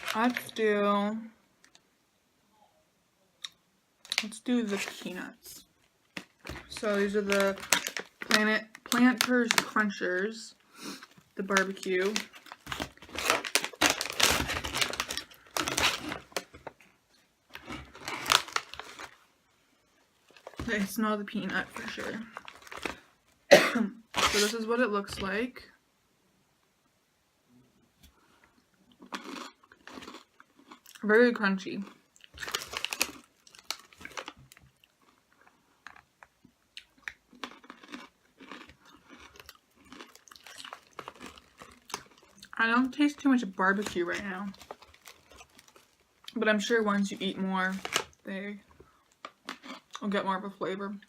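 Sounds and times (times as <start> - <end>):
snack bag crinkling: 0.0 - 0.6, 4.0 - 10.0, 11.0 - 19.3, 20.2 - 23.2, 24.1 - 24.6, 29.0 - 31.0, 31.8 - 46.4, 47.0 - 48.2, 48.8 - 50.0
crunching and chewing peanuts: 11.0 - 16.9, 28.5 - 31.1, 31.8 - 46.4, 48.8 - 50.1.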